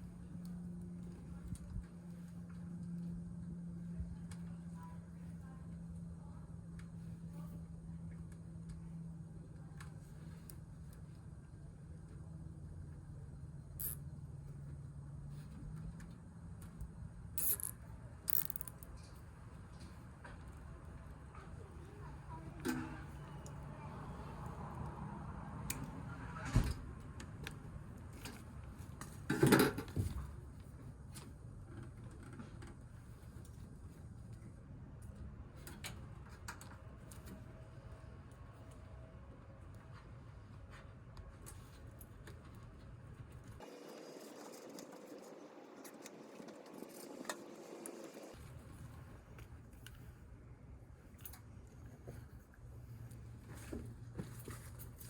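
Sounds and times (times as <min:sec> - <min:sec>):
metal parts and tools clanking: 0:18.3 - 0:19.1.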